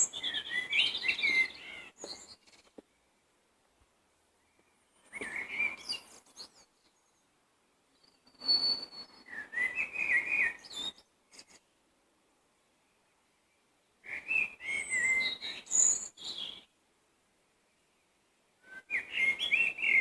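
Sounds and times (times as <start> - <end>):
songbirds warbling: 0.0 - 3.5.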